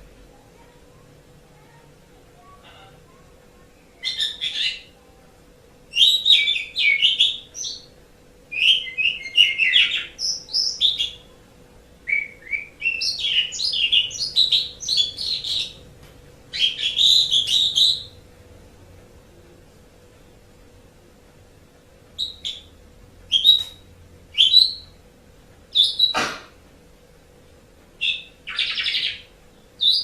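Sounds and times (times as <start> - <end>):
starling singing: 4.0 - 5.0, 5.9 - 7.9, 8.5 - 11.3, 12.1 - 15.8, 16.5 - 18.2, 23.3 - 25.0, 28.0 - 30.0.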